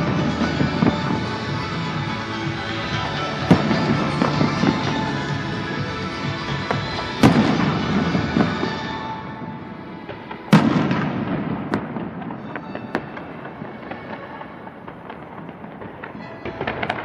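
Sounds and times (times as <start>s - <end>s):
fireworks bangs: 0.0s - 17.0s
music: 0.0s - 17.0s
fireworks pops: 10.0s - 17.0s.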